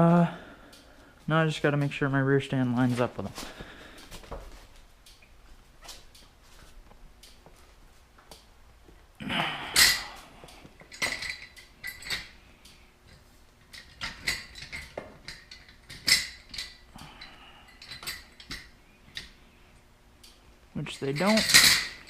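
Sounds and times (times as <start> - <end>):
metal clanking on metal: 20.9 - 22.0.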